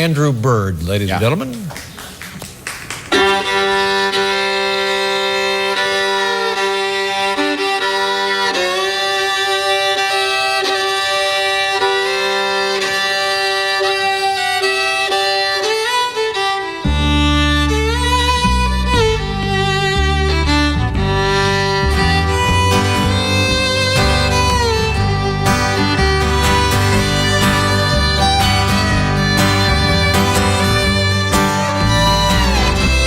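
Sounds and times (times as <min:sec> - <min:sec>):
people clapping: 0:00.9 - 0:03.8, 0:26.4 - 0:28.7
violin slow bowed notes: 0:03.2 - 0:33.0.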